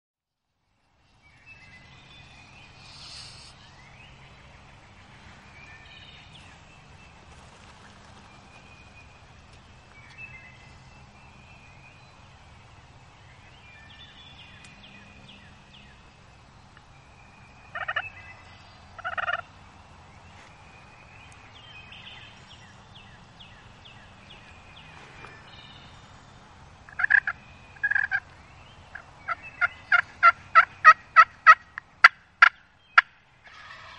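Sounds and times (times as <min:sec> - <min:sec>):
songbirds chirping: 0:00.4 - 0:33.9
wild turkey calls: 0:02.8 - 0:03.7, 0:17.6 - 0:19.6, 0:26.9 - 0:33.9.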